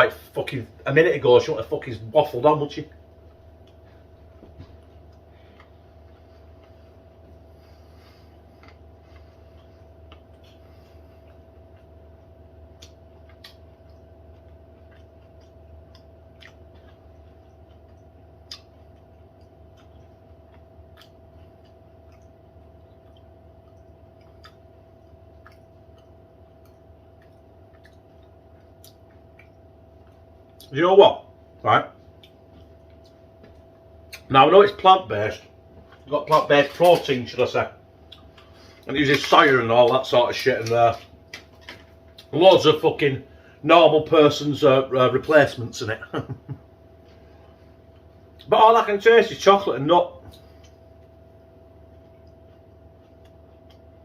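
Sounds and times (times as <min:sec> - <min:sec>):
steady electrical hum: 0:00.0 - 0:54.0
person chewing crunchy bar: 0:04.6 - 0:30.7, 0:51.8 - 0:54.0.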